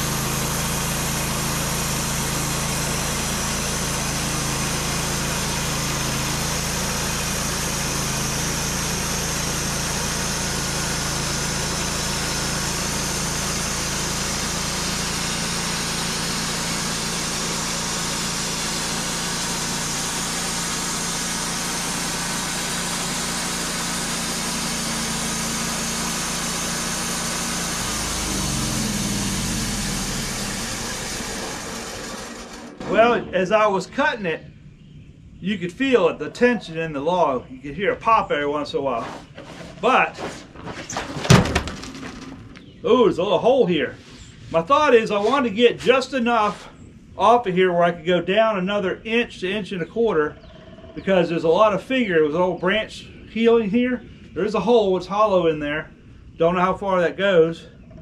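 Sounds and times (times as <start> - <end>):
saw blade cutting log: 0.0 - 33.8, 38.9 - 42.2, 44.2 - 46.8
sawmill engine running: 0.0 - 34.7, 37.8 - 46.8.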